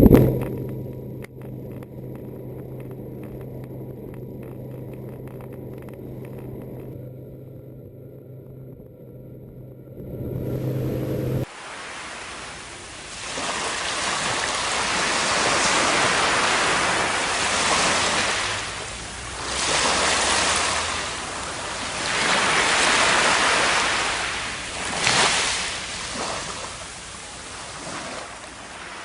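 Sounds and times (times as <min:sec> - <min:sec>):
waves and rushing water: 0:10.3 - 0:29.0.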